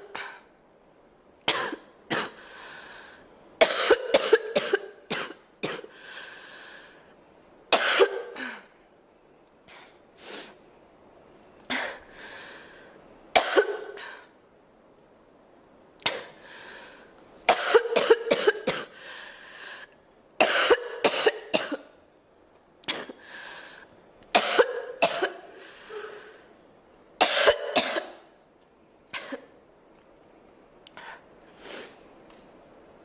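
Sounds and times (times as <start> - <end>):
girl breathing in: 2.4 - 3.3, 5.9 - 7.1, 11.7 - 13.0, 16.4 - 17.1, 23.2 - 23.9, 25.6 - 26.5
girl coughing: 3.6 - 5.9, 7.7 - 8.7, 13.4 - 14.0, 17.5 - 19.0, 20.4 - 21.8, 24.4 - 25.4, 27.2 - 28.2.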